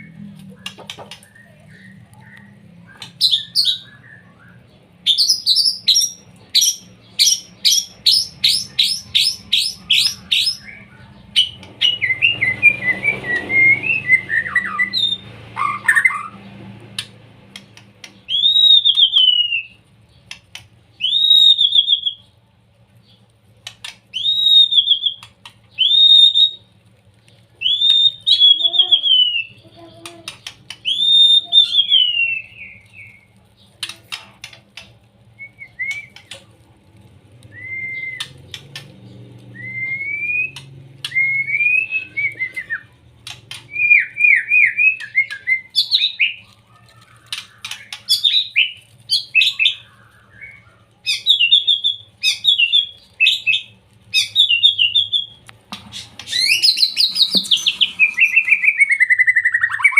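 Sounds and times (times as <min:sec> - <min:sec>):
bird singing whistled phrases: 0:00.0 - 0:16.4, 0:18.3 - 0:19.8, 0:21.0 - 0:22.3, 0:24.1 - 0:26.7, 0:27.6 - 0:29.6, 0:30.7 - 0:33.3, 0:35.4 - 0:36.3, 0:37.5 - 0:38.4, 0:39.5 - 0:43.0, 0:43.6 - 0:46.5, 0:47.3 - 0:55.4, 0:56.2 - 0:59.9.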